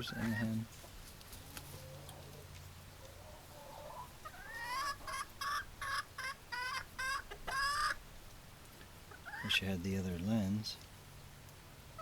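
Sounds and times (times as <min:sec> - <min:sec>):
chicken squawking calls: 0:03.2 - 0:08.0, 0:09.1 - 0:09.5.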